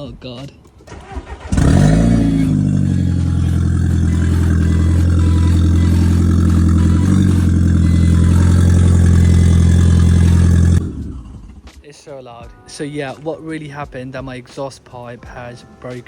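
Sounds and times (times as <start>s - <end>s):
engine revving: 0.9s - 11.7s
loud car engine running: 1.3s - 11.6s.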